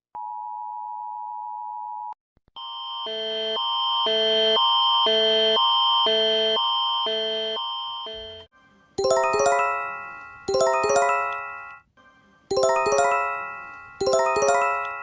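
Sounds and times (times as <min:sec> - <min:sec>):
electronic alert chime: 0:09.0 - 0:11.8, 0:12.5 - 0:15.0.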